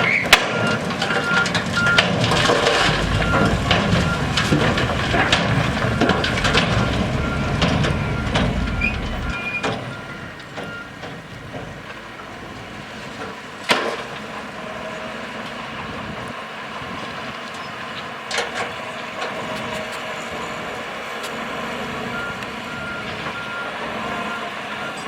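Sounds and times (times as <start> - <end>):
diesel engine rumbling: 0.4 - 14.6.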